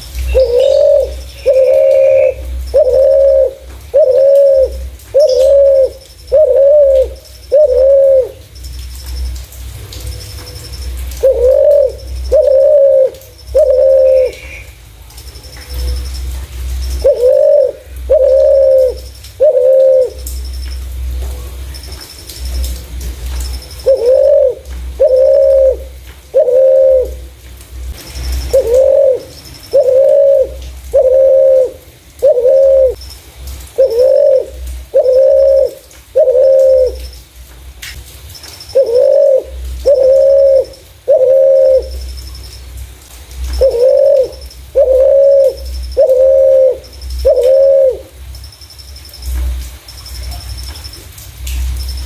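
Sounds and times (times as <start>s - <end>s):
dove cooing: 0.2s - 8.5s, 10.1s - 14.7s, 16.8s - 20.3s, 23.3s - 27.3s, 27.9s - 33.0s, 33.8s - 37.1s, 38.7s - 42.1s, 43.5s - 48.2s
faint high chirps: 43.5s - 52.0s.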